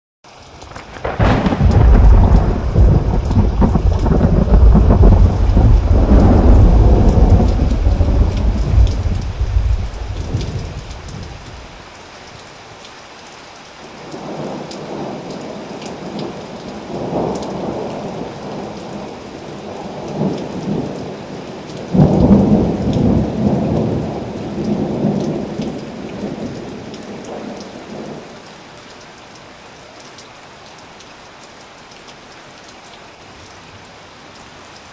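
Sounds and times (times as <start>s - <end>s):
steady rain: 0.2s - 34.9s
rolling thunder: 0.7s - 11.8s, 21.8s - 28.2s.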